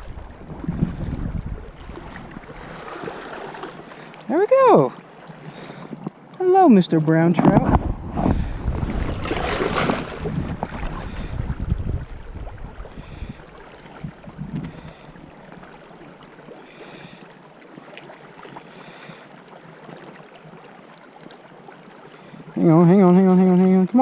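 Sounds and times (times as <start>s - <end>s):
wind buffeting microphone: 0.0s - 2.8s, 7.3s - 15.8s
river water rushing: 1.8s - 5.8s.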